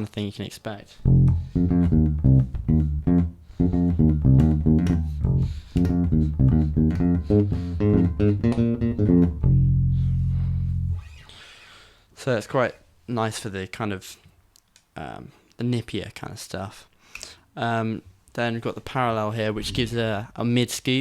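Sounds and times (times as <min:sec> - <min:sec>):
electric bass plucked notes: 0:01.0 - 0:11.2.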